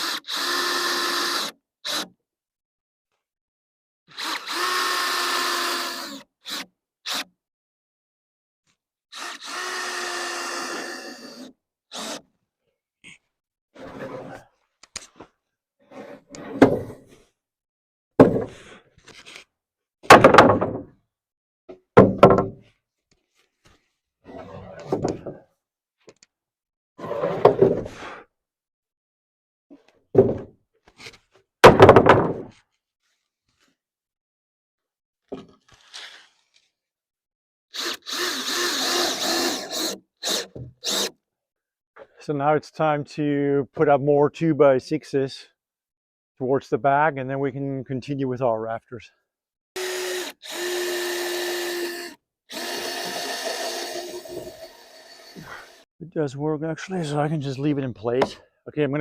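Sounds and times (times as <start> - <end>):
lumber knocks and thuds: 18.2 - 18.7, 20.0 - 20.9, 22.0 - 22.6, 30.2 - 30.6, 31.6 - 32.6
power drill whine: 37.8 - 41.1, 49.8 - 55.8.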